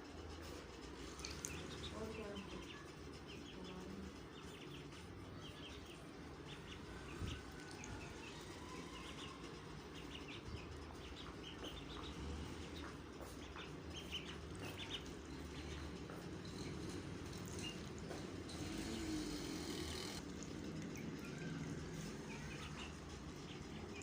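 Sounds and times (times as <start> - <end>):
chicks peeping: 9.9 - 16.9.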